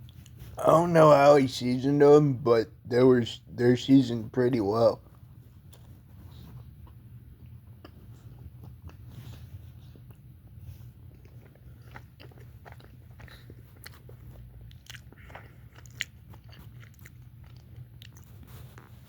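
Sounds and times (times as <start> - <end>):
faint steady hum: 0.0 - 19.0
person chewing crunchy food: 5.4 - 19.0.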